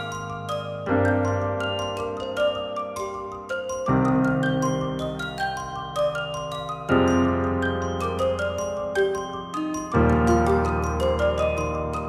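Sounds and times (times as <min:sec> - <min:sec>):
bell-like melody over sustained chords: 0:00.0 - 0:12.0.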